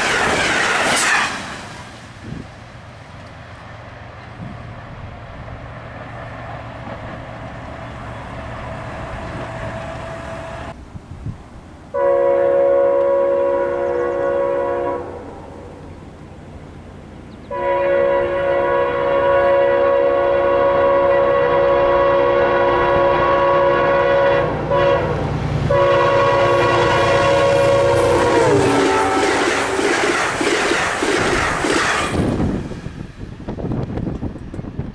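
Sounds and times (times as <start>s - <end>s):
passenger train rumbling past: 0.0s - 34.9s
locomotive air horn: 11.9s - 15.7s, 17.5s - 29.5s.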